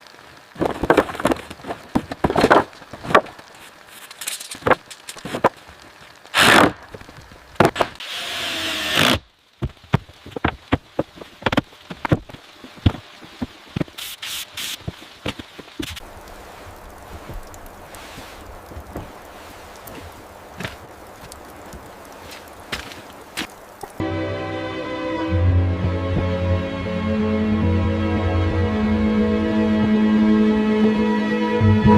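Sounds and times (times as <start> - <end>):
wood scraping and rubbing: 0.5 - 23.1
wooden knocks and taps: 9.6 - 13.9.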